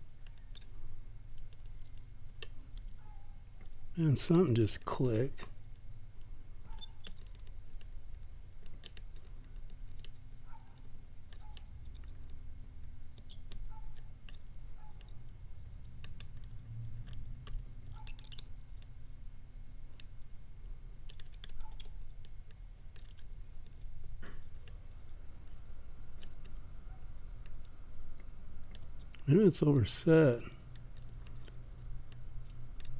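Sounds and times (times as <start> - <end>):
steady low hum: 0.0 - 32.9
lock pick clicks and scrapes: 6.7 - 8.0, 13.1 - 15.2, 15.9 - 19.0, 21.0 - 25.2, 26.1 - 26.6, 30.8 - 32.9.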